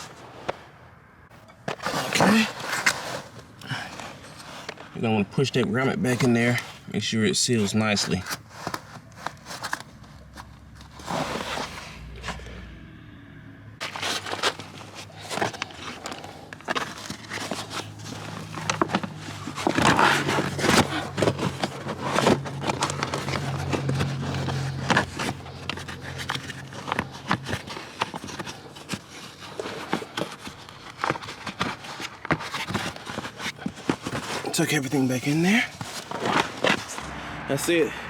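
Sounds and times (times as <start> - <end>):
car carpet and trim being handled: 1.4 - 12.6, 13.8 - 37.8
steady low hum: 36.9 - 38.0.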